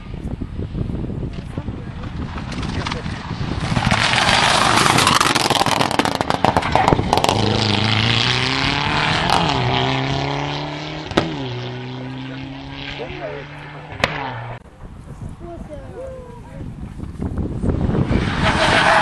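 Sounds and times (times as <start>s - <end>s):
rally car passing at speed: 2.0s - 14.6s, 17.6s - 19.0s
sharp pop: 14.0s - 14.3s.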